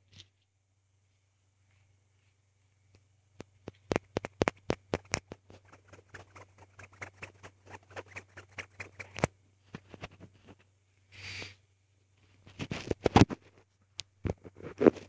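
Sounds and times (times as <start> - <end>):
hand spinner clicking: 3.9 - 9.3.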